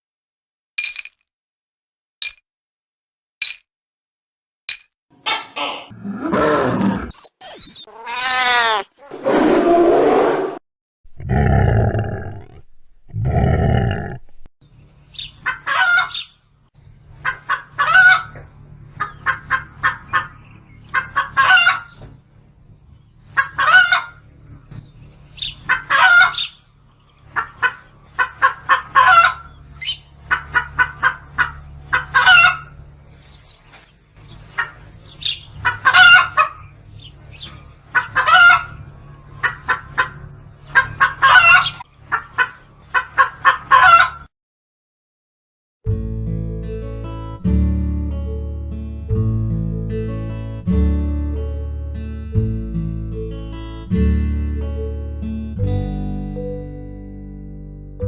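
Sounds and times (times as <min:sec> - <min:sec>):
chickens cackling: 0:05.2 - 0:10.6, 0:15.1 - 0:16.4, 0:17.1 - 0:22.2, 0:23.0 - 0:33.6, 0:34.2 - 0:44.3
deep loud animal calls: 0:05.3 - 0:07.2, 0:07.9 - 0:14.5.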